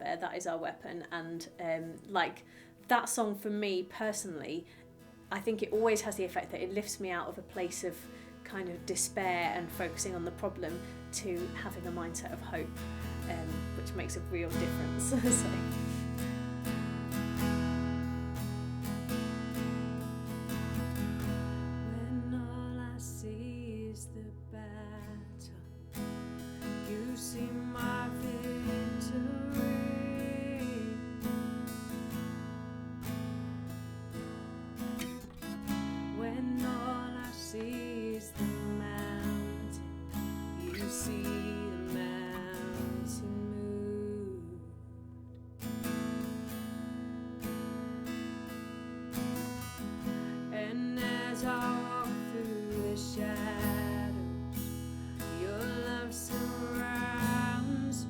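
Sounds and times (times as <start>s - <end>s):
strummed acoustic guitar music: 0.0s - 58.0s.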